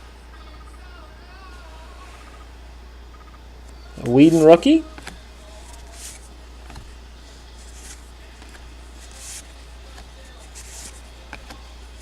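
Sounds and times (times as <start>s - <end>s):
low steady hum: 0.0s - 12.0s
trading cards swishing: 4.0s - 12.0s.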